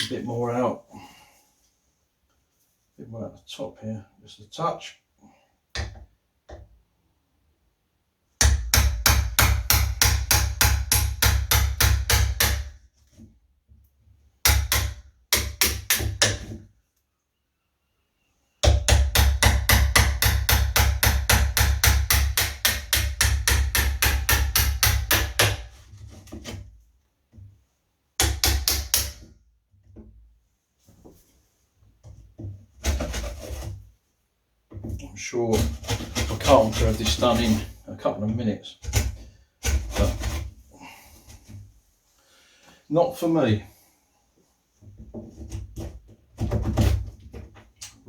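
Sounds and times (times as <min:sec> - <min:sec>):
hammer tapping a wood chisel: 0:05.7 - 0:06.7, 0:08.4 - 0:12.8, 0:14.4 - 0:16.6, 0:18.6 - 0:25.7, 0:28.2 - 0:29.3.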